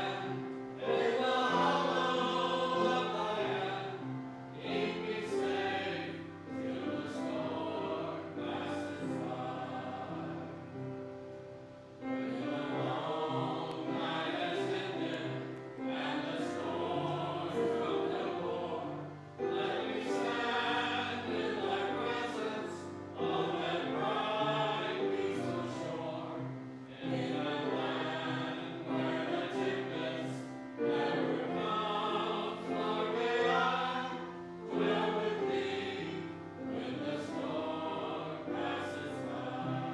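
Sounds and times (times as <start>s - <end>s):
church choir singing: 0.0s - 39.9s.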